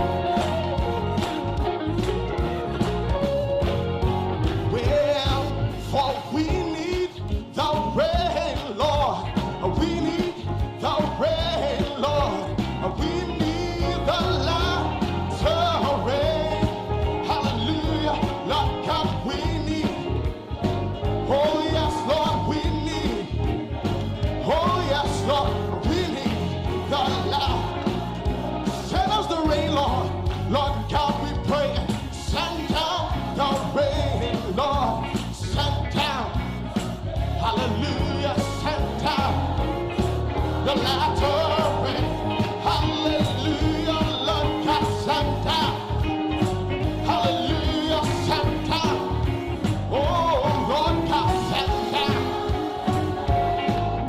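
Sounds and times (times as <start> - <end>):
gospel band playing: 0.0 - 54.0
people singing: 35.6 - 46.0, 49.8 - 54.0.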